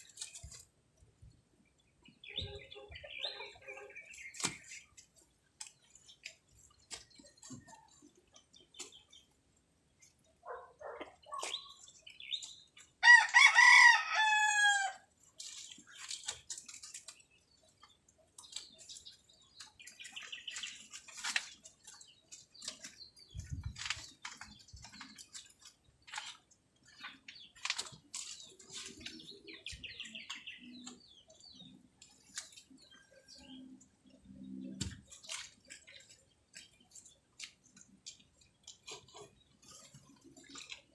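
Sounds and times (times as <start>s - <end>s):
rooster crowing: 13.0s - 15.0s
faint clicks and rustles: 15.2s - 40.9s.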